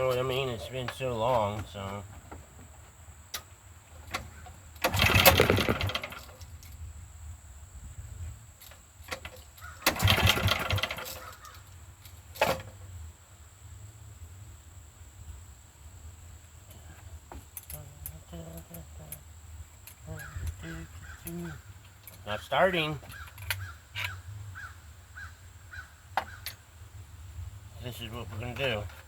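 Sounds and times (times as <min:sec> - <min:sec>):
generator recoil starter pulls: 0:03.4 - 0:06.8, 0:08.6 - 0:12.8, 0:23.0 - 0:24.2, 0:28.1 - 0:29.0.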